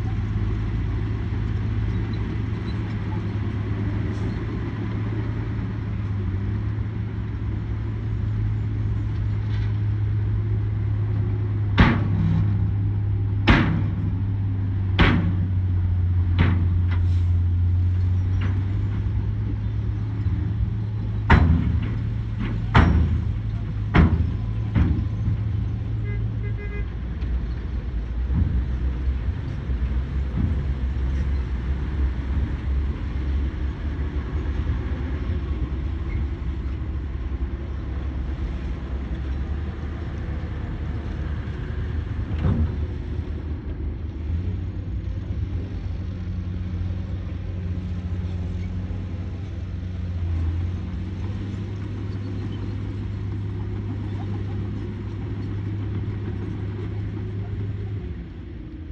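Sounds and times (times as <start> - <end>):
excavator diesel engine running: 0.0 - 58.9
sharp knocks: 15.0 - 15.6.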